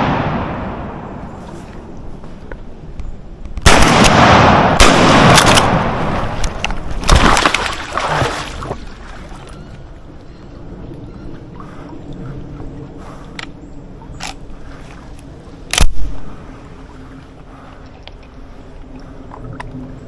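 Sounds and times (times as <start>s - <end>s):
shotgun blasts: 0.0s - 1.2s, 3.6s - 6.4s.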